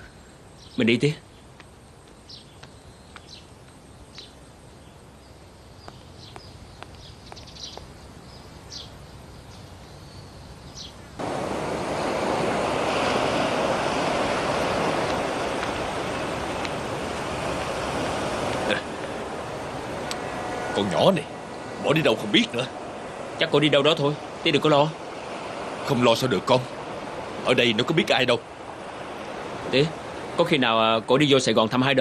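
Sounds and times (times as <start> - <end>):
loud steady rushing noise: 11.2 - 31.3.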